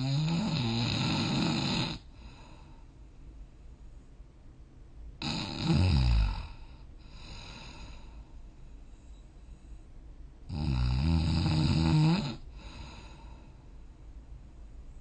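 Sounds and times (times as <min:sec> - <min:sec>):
person snoring: 0:00.0 - 0:02.6, 0:05.2 - 0:08.1, 0:10.5 - 0:13.4
soft breathing: 0:02.0 - 0:04.6, 0:06.5 - 0:10.3, 0:12.4 - 0:15.0.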